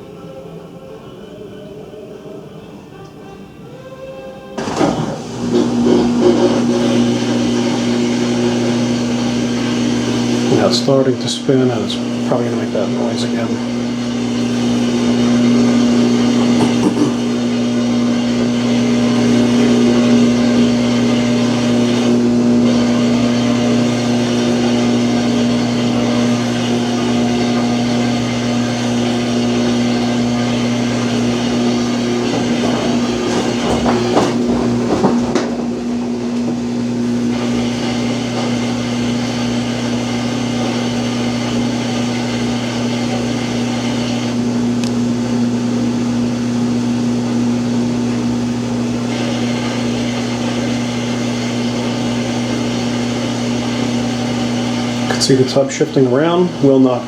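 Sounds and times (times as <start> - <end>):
washing machine motor hum: 0.0 - 57.0
washer tub knocking and rattling: 4.6 - 7.2, 29.5 - 37.6.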